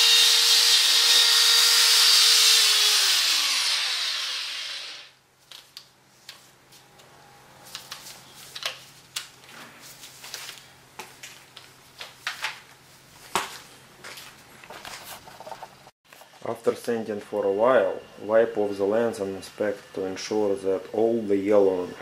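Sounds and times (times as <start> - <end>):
hands rustling materials: 5.4 - 16.5.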